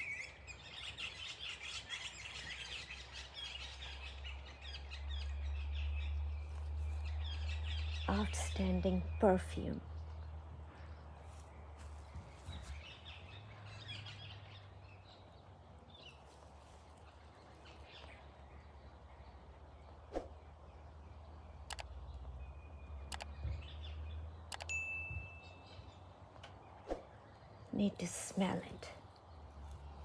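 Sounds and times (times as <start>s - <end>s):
birds chirping: 0.0s - 30.0s
sharp clicks: 21.6s - 21.9s, 23.1s - 23.4s, 24.5s - 24.7s.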